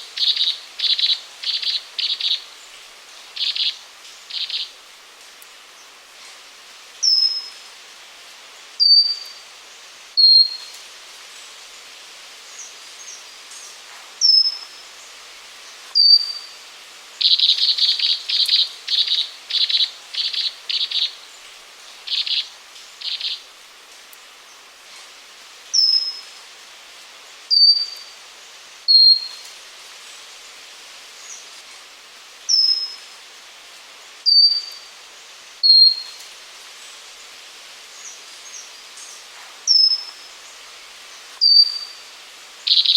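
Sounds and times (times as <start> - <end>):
background hiss: 0.0 - 42.9
bird whistled notes: 34.3 - 34.8, 35.6 - 36.2, 41.4 - 42.0.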